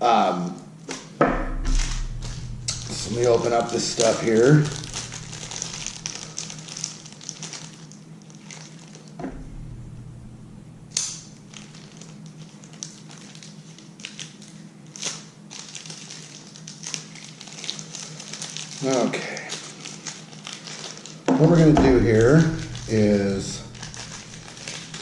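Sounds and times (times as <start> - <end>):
steady low hum: 0.7 - 8.2, 9.1 - 12.8, 21.3 - 25.0
packaging crinkling: 1.7 - 9.2, 10.9 - 25.0.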